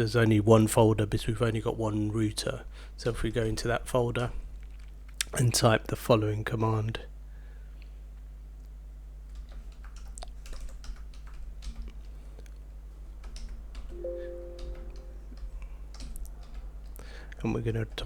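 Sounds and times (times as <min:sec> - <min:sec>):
typing on keyboard: 0:09.3 - 0:12.1, 0:13.2 - 0:16.9.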